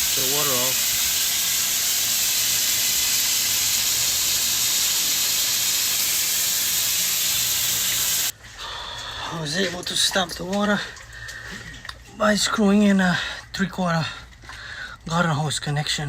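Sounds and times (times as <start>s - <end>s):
water spraying with loud hiss: 0.0s - 8.4s.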